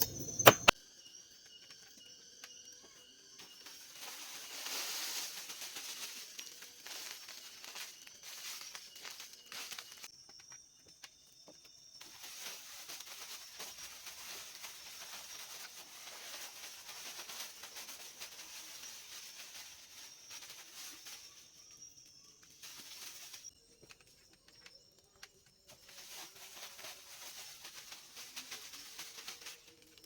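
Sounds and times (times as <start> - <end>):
high-pitched insect drone: 0.0 - 23.9
crackles and small clicks: 21.8 - 26.2.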